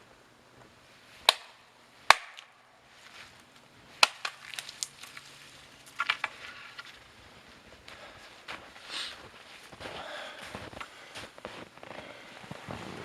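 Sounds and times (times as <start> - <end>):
axe chopping wood: 1.2 - 2.6, 4.0 - 4.4.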